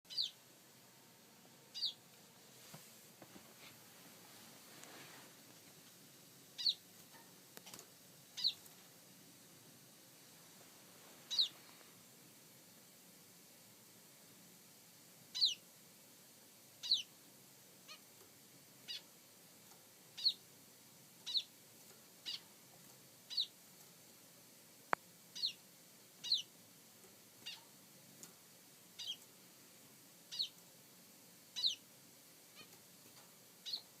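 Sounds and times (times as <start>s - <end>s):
bird calling: 11.3s - 11.6s.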